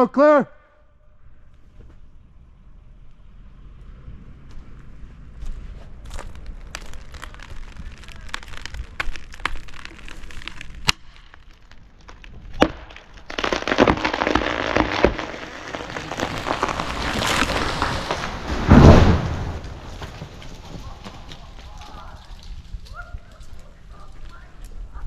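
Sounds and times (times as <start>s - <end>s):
wood cracking: 4.4s - 25.0s
crash of branches: 6.0s - 24.7s
tree trunk thudding on ground: 12.0s - 22.6s.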